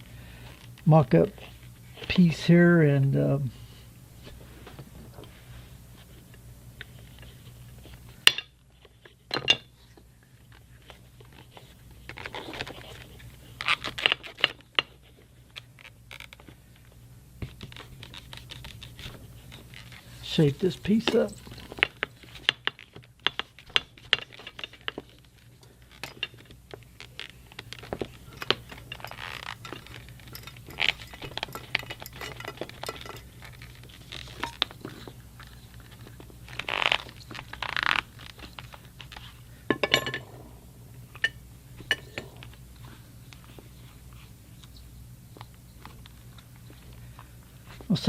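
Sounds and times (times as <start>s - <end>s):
steady low hum: 0.0s - 48.0s
leather rubbing and scraping: 27.0s - 39.5s.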